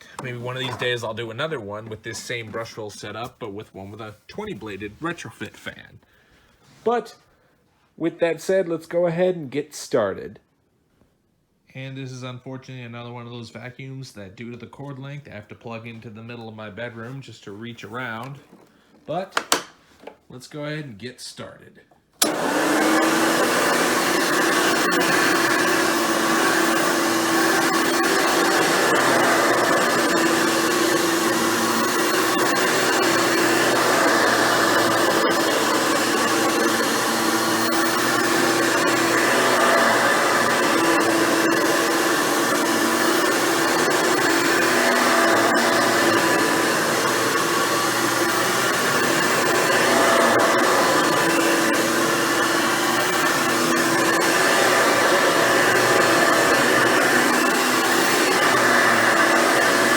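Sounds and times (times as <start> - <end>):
vacuum cleaner whine: 0.0 - 3.2, 22.2 - 59.9.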